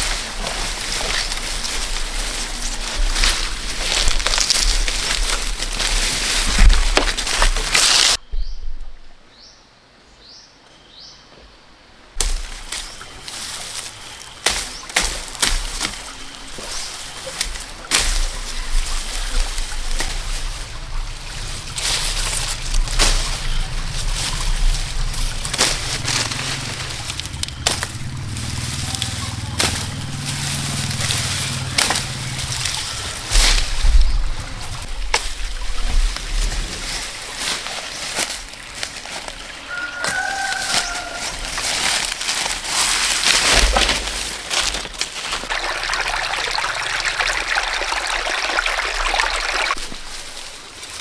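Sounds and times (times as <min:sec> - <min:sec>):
water sloshing and splashing: 0:00.0 - 0:08.2, 0:12.2 - 0:51.0
low drone: 0:18.2 - 0:37.1.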